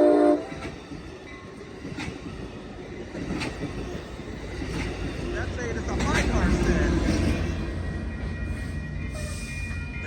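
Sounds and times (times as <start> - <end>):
train horn: 0.0 - 0.7
passenger train rumbling past: 0.0 - 10.0
sharp clicks of train: 0.5 - 2.5, 3.1 - 7.5.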